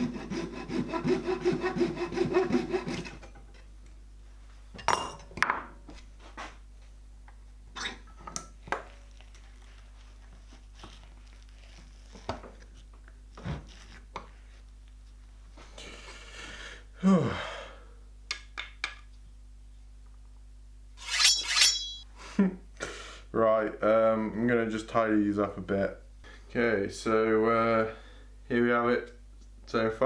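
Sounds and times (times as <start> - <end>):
ringing metallic clink: 21.0 - 22.0
short scrape: 21.0 - 22.0.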